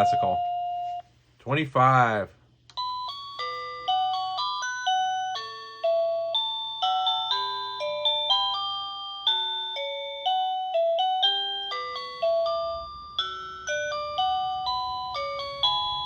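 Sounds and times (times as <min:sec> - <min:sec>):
doorbell chime melody: 0:00.0 - 0:01.0, 0:02.7 - 0:16.0.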